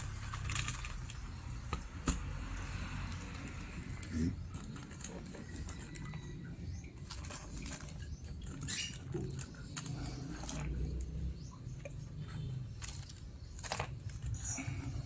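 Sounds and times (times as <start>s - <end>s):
pellets clicking in plastic bag: 0.0s - 1.3s.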